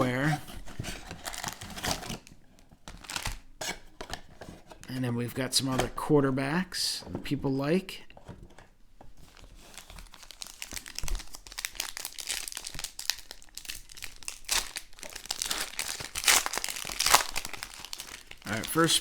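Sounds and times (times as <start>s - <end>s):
plastic wrapping crinkling and tearing: 0.9s - 4.3s, 9.2s - 19.0s.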